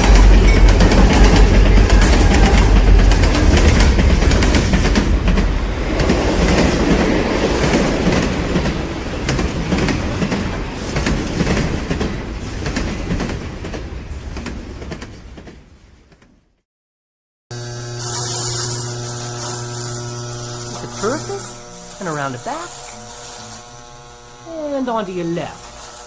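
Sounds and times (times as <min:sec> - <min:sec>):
wheels clicking on rails: 0:00.0 - 0:16.3
train rumbling on rails: 0:00.0 - 0:16.4.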